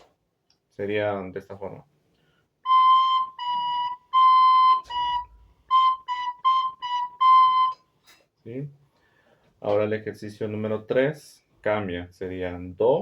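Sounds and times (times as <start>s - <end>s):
soprano recorder notes: 2.6s - 8.0s.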